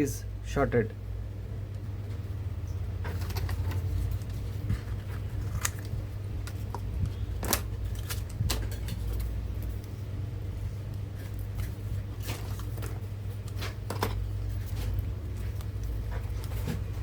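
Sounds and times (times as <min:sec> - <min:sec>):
steady low hum: 0:00.0 - 0:17.0
foil tape clicks and crinkles: 0:05.0 - 0:06.8, 0:07.4 - 0:09.9.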